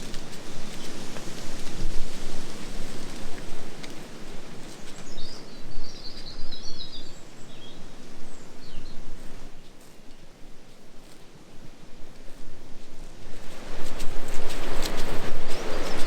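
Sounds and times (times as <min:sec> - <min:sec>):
wind buffeting microphone: 0:00.0 - 0:09.7, 0:11.6 - 0:16.0
small bird twittering: 0:04.7 - 0:09.0.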